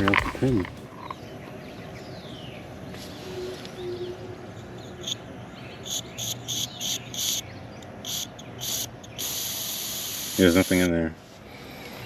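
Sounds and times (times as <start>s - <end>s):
gas hissing from a valve: 8.7s - 10.6s.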